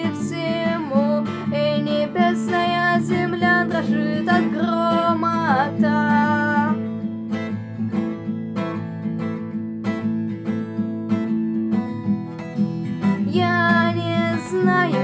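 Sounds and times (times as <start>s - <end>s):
person singing: 0.0s - 6.8s, 13.3s - 15.0s
acoustic guitar strumming: 0.0s - 15.0s.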